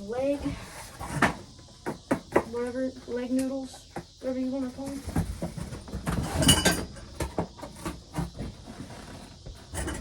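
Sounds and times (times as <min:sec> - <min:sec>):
knocks and rustling: 0:04.8 - 0:10.0.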